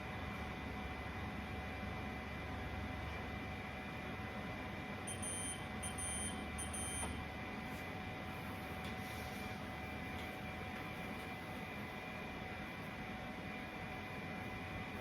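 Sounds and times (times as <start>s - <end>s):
machine hum with tones: 0.0s - 15.0s.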